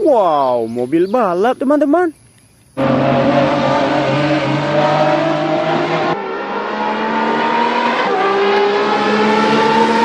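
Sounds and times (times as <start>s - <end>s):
race car engine accelerating: 2.8s - 10.0s.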